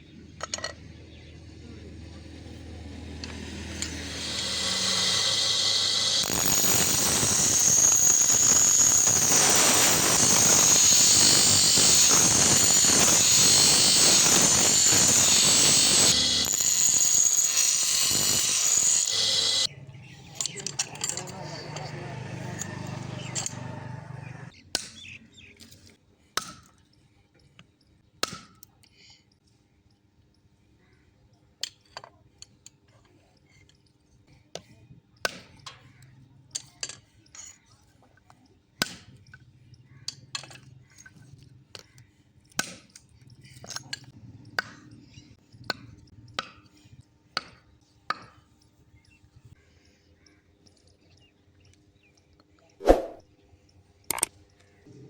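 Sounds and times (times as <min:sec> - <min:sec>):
power tool grinding metal: 0:02.3 - 0:19.7, 0:20.3 - 0:24.5.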